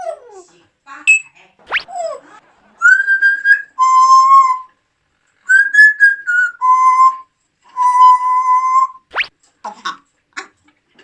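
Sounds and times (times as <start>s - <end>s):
parrot whistling a tune: 1.1s - 2.0s, 2.8s - 4.8s, 5.5s - 9.3s.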